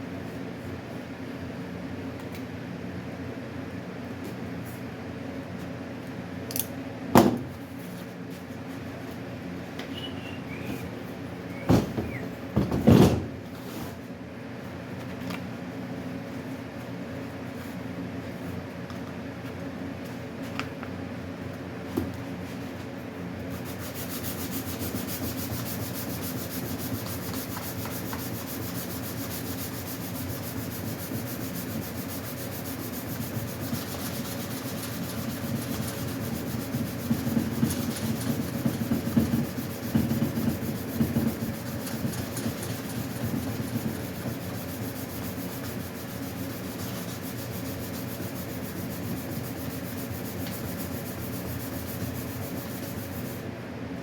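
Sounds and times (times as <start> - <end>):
sandpaper rubbing back and forth: 23.6 - 53.4.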